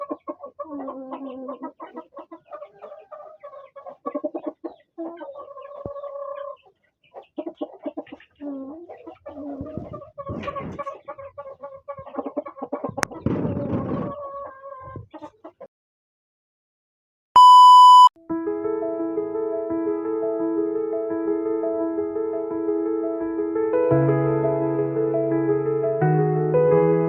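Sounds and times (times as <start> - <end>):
chickens clucking: 0.0 - 15.7.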